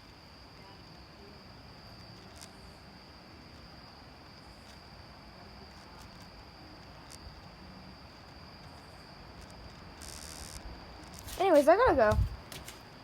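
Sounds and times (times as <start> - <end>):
crickets chirping: 0.0 - 13.0
wind rumble on microphone: 11.8 - 12.5.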